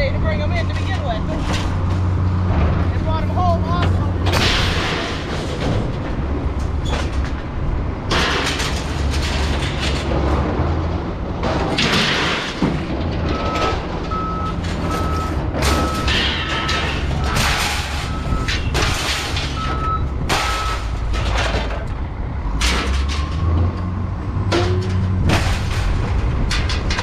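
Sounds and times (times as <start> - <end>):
low engine rumble: 0.0 - 27.0
loud bangs and clatters: 0.6 - 27.0
reversing alarm beeping: 13.3 - 18.8, 19.5 - 20.9.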